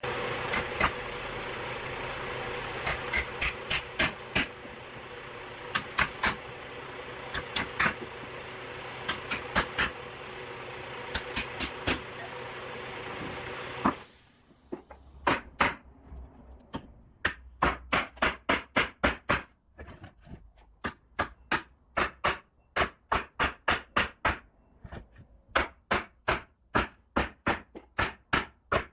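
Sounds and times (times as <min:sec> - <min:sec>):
machine humming: 0:00.0 - 0:14.4
hammering: 0:02.8 - 0:04.8, 0:05.7 - 0:06.5, 0:07.3 - 0:08.1, 0:09.0 - 0:10.0, 0:11.1 - 0:12.2.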